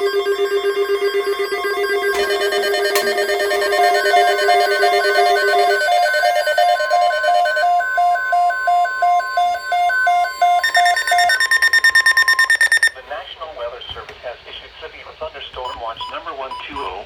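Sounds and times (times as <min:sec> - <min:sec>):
steady low tone: 0:00.0 - 0:11.8
higher pulsing beep: 0:00.0 - 0:13.0
pulsing two-pitch electronic beeps: 0:00.0 - 0:13.0
steady mid-pitched alarm tone: 0:00.0 - 0:13.0.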